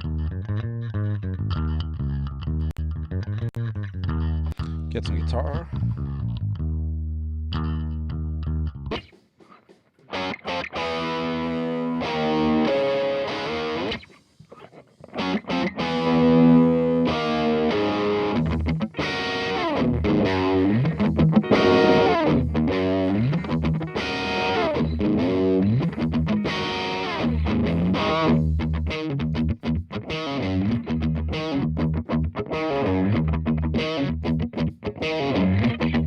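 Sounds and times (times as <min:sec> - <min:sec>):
distorted electric guitar riff: 0:10.1 - 0:36.0.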